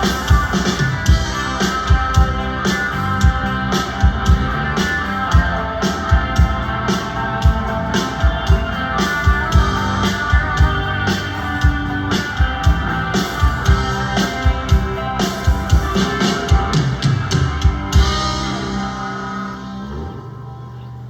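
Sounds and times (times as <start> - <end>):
drum beat: 0.0 - 19.2
rock guitar: 0.0 - 21.0.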